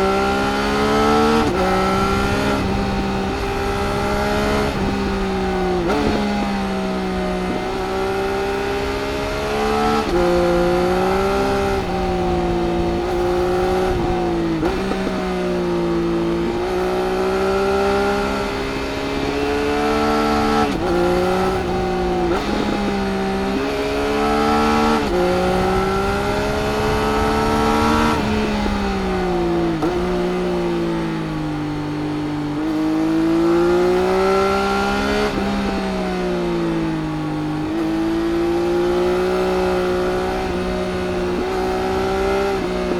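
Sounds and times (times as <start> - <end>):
motorcycle engine revving: 0.0 - 42.9
wind rush: 0.0 - 42.9.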